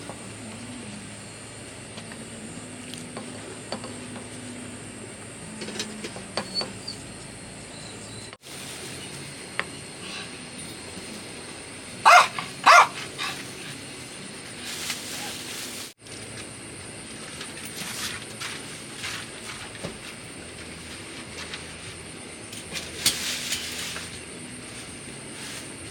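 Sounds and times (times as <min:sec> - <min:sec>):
steady high hiss: 0:08.4 - 0:16.0, 0:18.9 - 0:25.9
dog barking: 0:12.0 - 0:13.4.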